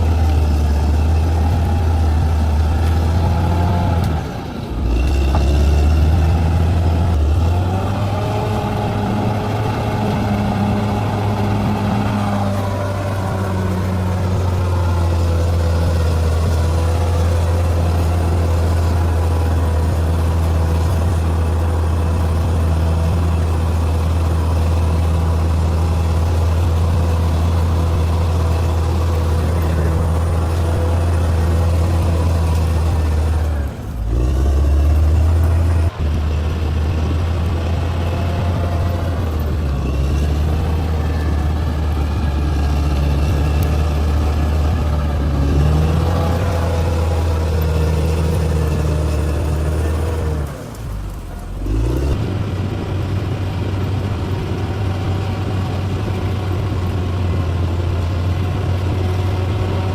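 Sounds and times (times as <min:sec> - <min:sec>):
heavy diesel engine droning: 0:00.0 - 0:59.9.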